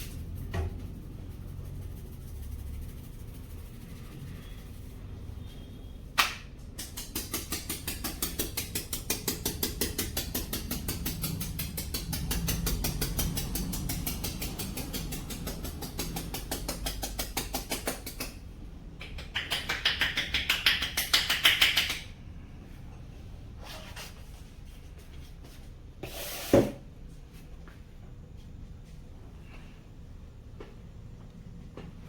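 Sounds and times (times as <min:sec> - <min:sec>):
percussive head massage tapping: 0:06.2 - 0:18.4, 0:19.0 - 0:22.1.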